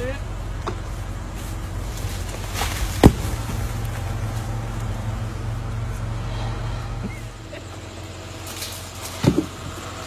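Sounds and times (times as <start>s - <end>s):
truck engine running: 0.0s - 10.0s
loud thump: 2.9s - 3.6s.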